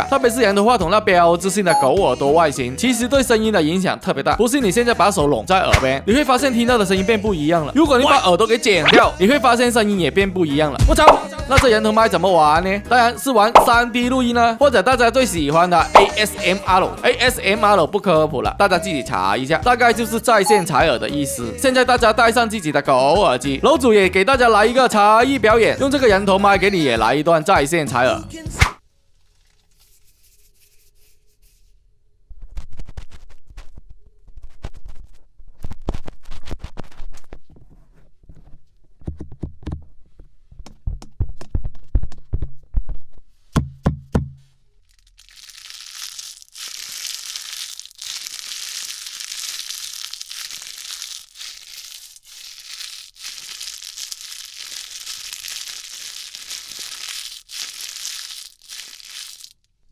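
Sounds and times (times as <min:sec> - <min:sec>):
knocks and thumps on ear: 0:43.5 - 0:44.5.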